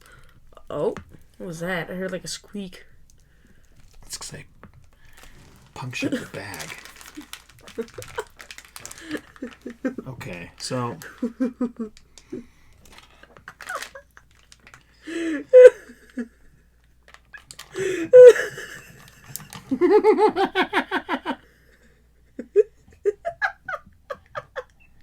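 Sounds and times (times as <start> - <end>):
person laughing: 6.0 - 10.1, 11.0 - 12.4, 13.1 - 14.3, 15.1 - 16.5, 17.8 - 21.4, 22.4 - 24.9.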